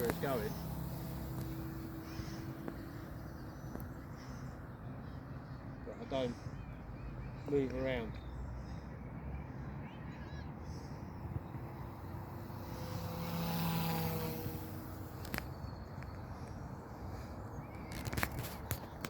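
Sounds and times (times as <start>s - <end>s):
rc helicopter rotor whine: 0.0s - 4.1s, 10.9s - 16.8s.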